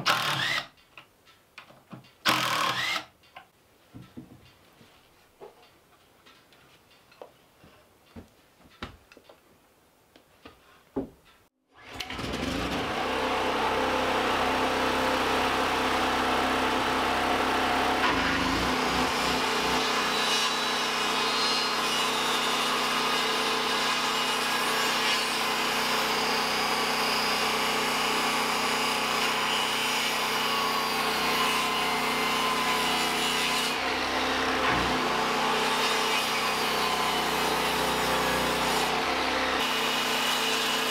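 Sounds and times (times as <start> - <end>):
power saw cutting wood: 0.0 - 0.7, 2.2 - 3.1, 11.7 - 40.9.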